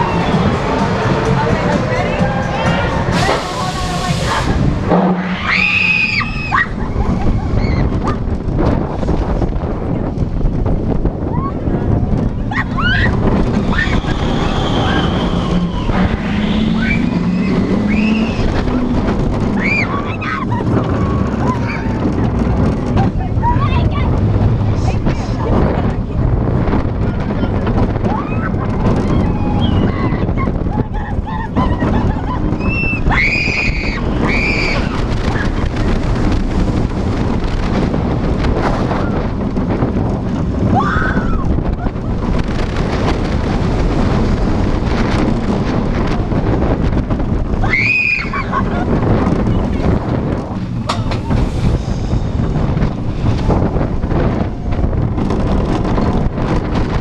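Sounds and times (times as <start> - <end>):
riders whooping and screaming: 0.0 - 8.4, 11.1 - 23.8, 26.8 - 57.0
roller coaster running: 0.0 - 57.0
wind rushing over microphone: 0.0 - 57.0
riders screaming: 5.2 - 8.1, 12.5 - 22.2, 28.0 - 35.9, 40.6 - 41.6, 47.5 - 48.8.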